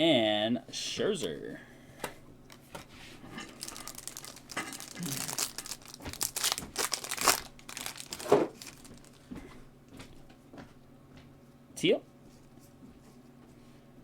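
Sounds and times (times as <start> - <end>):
foil wrapper tearing and crinkling: 3.4 - 9.2.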